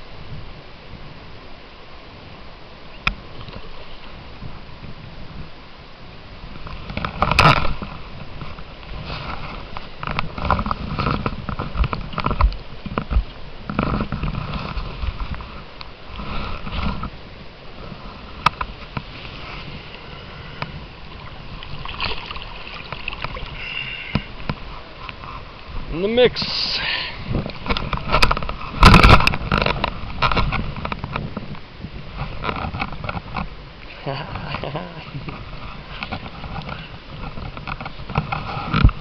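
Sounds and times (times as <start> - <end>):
water splashing and sloshing: 0.0 - 39.0.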